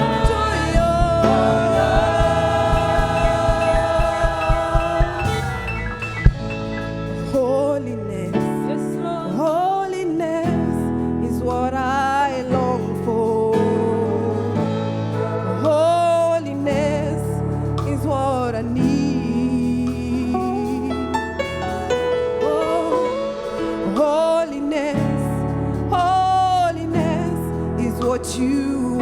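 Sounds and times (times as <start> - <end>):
keyboard and band chords: 0.0 - 29.0
person singing with vibrato: 0.0 - 29.0.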